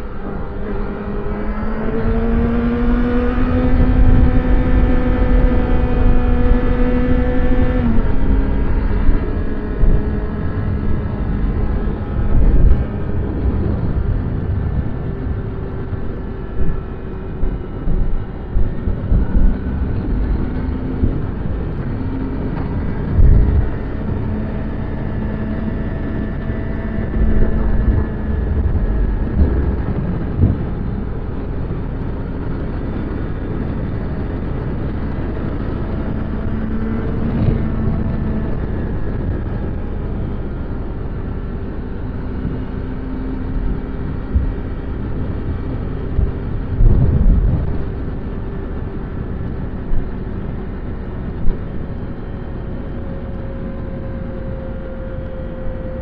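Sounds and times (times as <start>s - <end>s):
low rumbling thumps: 7.7s - 26.0s, 26.8s - 40.4s, 44.2s - 50.1s.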